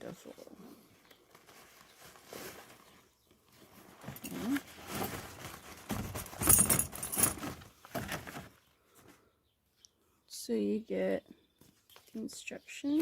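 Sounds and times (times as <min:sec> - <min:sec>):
fabric rustling: 0:00.9 - 0:08.6
small metal hardware clinking: 0:06.4 - 0:07.5.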